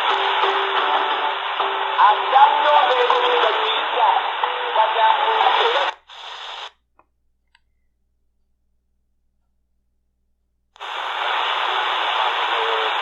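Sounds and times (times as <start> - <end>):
radio static hiss: 0.0 - 6.8, 10.8 - 13.0.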